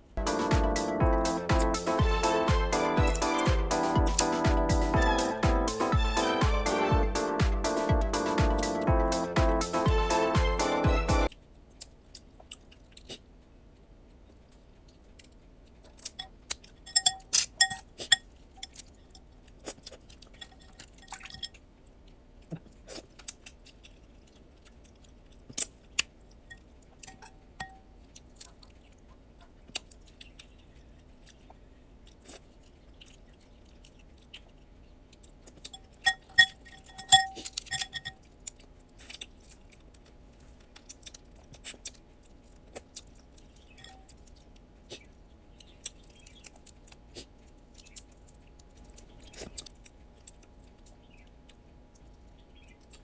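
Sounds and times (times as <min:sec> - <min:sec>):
crab shells cracking: 0:29.7 - 0:51.1
metal tools clinking: 0:36.1 - 0:38.2.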